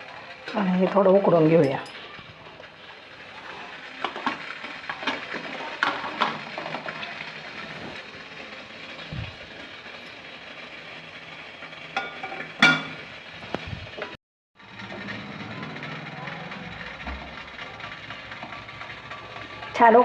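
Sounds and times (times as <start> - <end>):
steam hissing: 0.0 - 20.0
water boiling: 0.0 - 20.0
metal cookware clatter: 0.5 - 2.6, 12.0 - 13.1.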